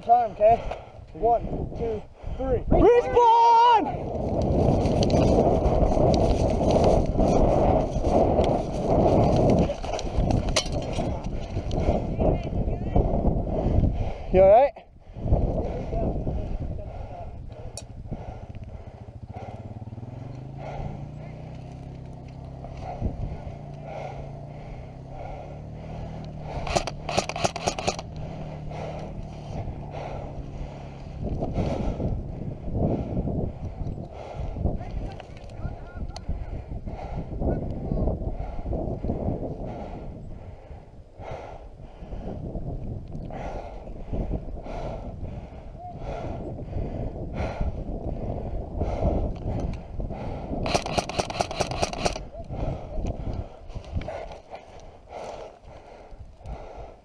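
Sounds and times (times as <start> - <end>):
airsoft gun firing: 26.7 - 28.0, 50.6 - 52.2.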